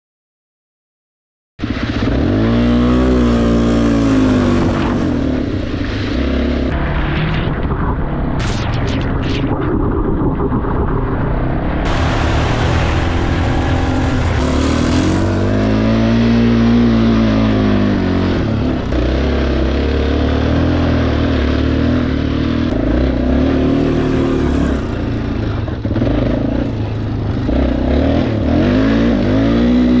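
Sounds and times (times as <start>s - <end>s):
atv engine revving: 1.6s - 6.8s, 11.9s - 30.0s.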